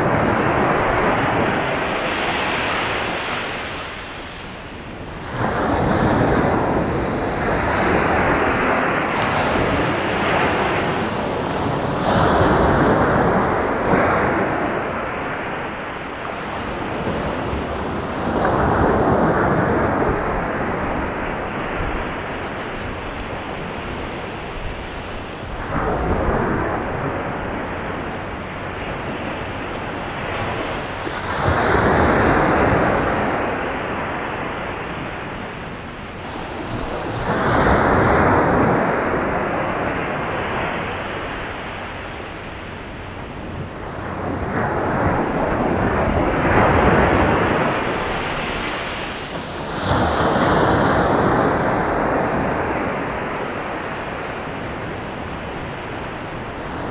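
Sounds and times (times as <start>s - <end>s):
sea waves breaking on beach: 0.0s - 56.9s.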